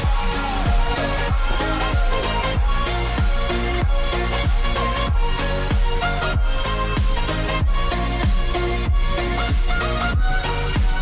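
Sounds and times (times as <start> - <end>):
deep kick drums: 0.0 - 11.0
held synth notes: 0.0 - 11.0.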